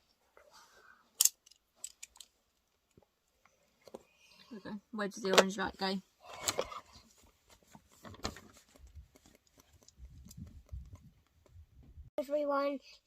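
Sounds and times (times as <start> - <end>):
plastic pieces clicking and rustling: 1.2 - 2.3.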